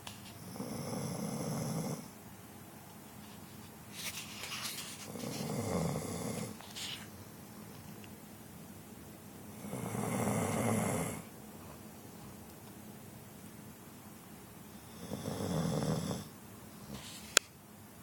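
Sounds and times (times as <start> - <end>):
dog snoring: 0.4 - 2.2, 5.0 - 6.8, 9.5 - 11.3, 14.7 - 17.0.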